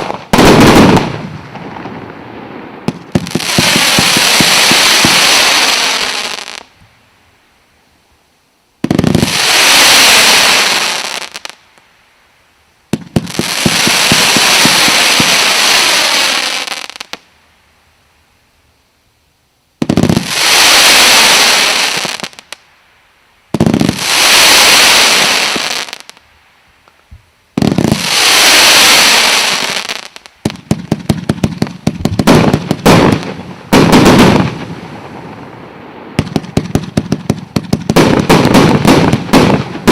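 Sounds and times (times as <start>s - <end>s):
firework cracks and bangs: 0.0s - 6.7s, 12.9s - 17.3s, 23.6s - 26.2s, 27.6s - 39.9s
fireworks hissing and crackling: 0.0s - 7.5s, 8.8s - 17.7s, 19.8s - 39.9s.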